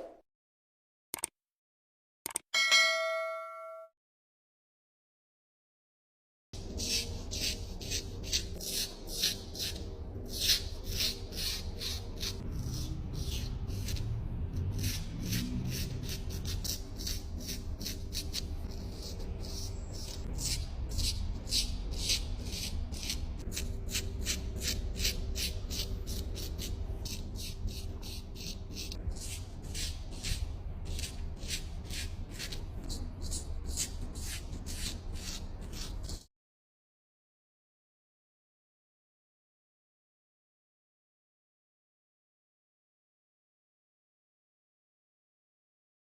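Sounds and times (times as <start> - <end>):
razor shaving stubble: 14.8 - 36.2.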